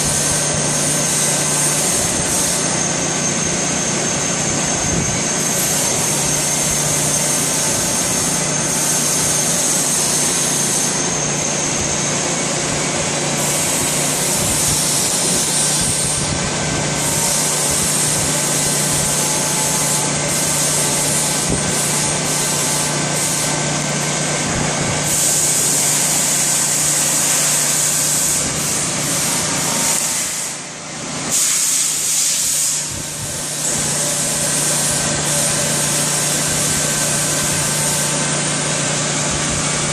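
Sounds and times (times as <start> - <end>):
lathe humming: 0.0 - 31.4
loud hiss: 0.0 - 39.9.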